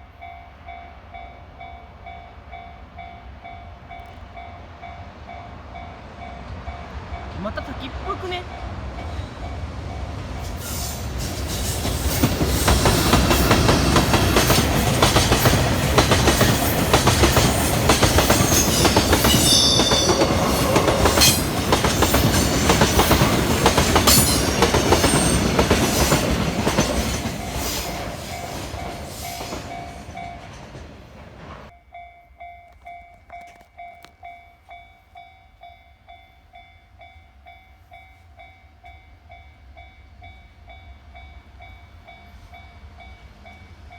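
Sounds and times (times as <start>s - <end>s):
crossing warning bell: 0.0s - 43.9s
train wagons clattering over rails: 8.7s - 31.7s
high wheel squeal: 18.4s - 21.6s.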